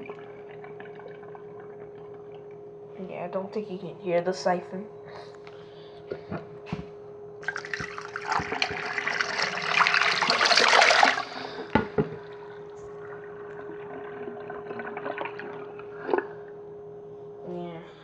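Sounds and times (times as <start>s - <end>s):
water trickling: 7.4s - 11.4s
toilet flushing water rushing: 7.4s - 12.4s.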